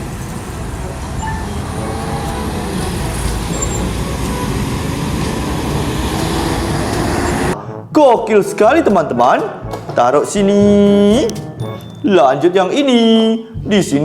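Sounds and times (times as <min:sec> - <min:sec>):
traffic noise: 0:00.0 - 0:07.6
bus engine rumbling: 0:00.0 - 0:07.9
faint rising tone: 0:01.2 - 0:07.6.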